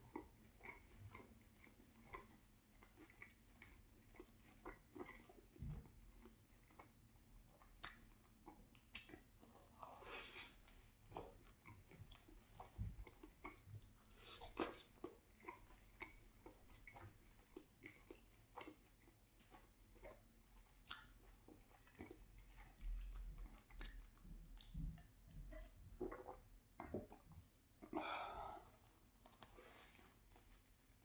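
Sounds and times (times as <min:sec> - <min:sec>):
chewing a sandwich: 0:00.0 - 0:31.0
mouth clicks and smacks: 0:07.6 - 0:09.4, 0:11.2 - 0:18.9, 0:20.0 - 0:28.0.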